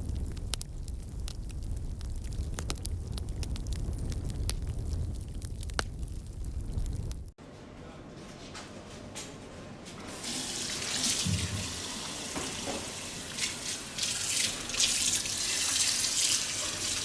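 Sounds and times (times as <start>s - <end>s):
tap water running into sink: 10.1s - 17.0s.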